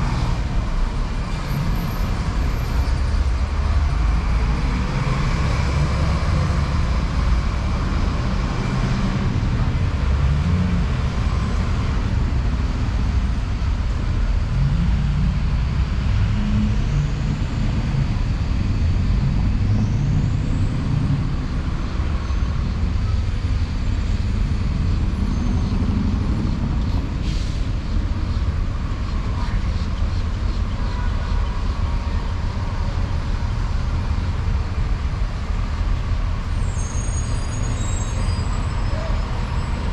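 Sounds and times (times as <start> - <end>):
road traffic rumble: 0.0 - 39.9
rising high squeals: 36.5 - 39.9.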